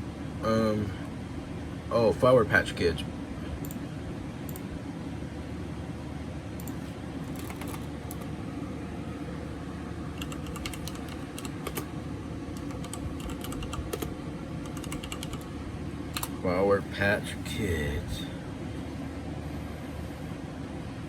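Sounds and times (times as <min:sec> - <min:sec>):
low fan hum: 0:00.0 - 0:21.0
typing on computer keyboard: 0:06.6 - 0:08.3, 0:10.2 - 0:11.9, 0:12.5 - 0:15.5, 0:16.2 - 0:16.4.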